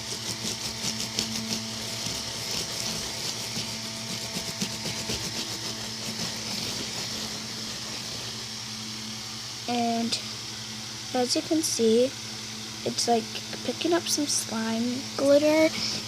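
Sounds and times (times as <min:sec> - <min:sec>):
pad scrubbing wet carpet: 0:00.0 - 0:08.4
steady low hum: 0:00.0 - 0:16.0.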